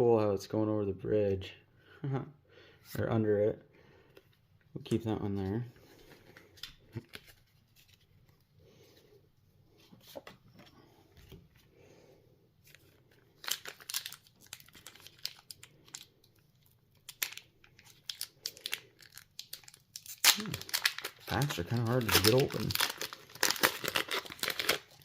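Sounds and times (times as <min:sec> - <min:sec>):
foil wrapper crinkling and tearing: 0:12.6 - 0:25.0.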